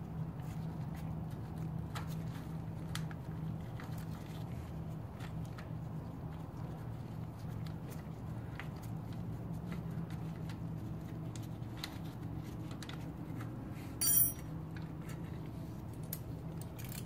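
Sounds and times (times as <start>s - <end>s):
metal hand tools clicking: 14.0s - 14.4s.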